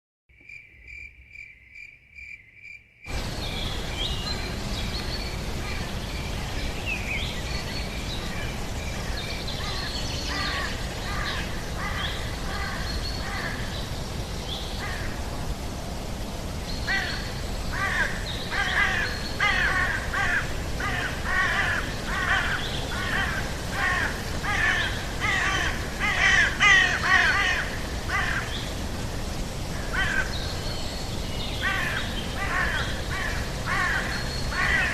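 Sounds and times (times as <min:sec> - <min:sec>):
cricket chirping: 0:00.3 - 0:04.2
steady hiss: 0:03.1 - 0:34.9
bird calls and squawks: 0:09.0 - 0:13.8.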